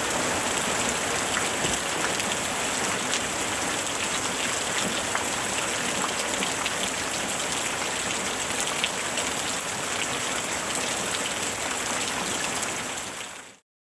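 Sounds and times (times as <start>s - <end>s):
steady rain hiss: 0.0s - 5.7s.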